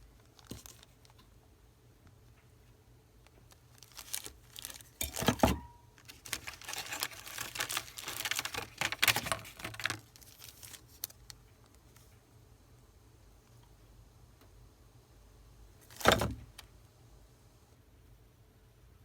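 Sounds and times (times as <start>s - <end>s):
plastic packaging crinkling: 0.2s - 1.2s, 3.5s - 12.0s.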